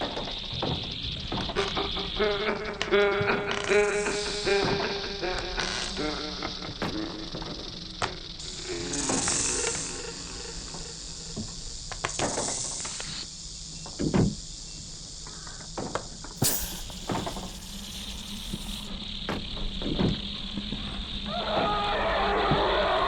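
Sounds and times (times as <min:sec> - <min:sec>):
burst of brighter hiss: 0:16.4 - 0:18.9
steady high hiss: 0:16.4 - 0:19.0.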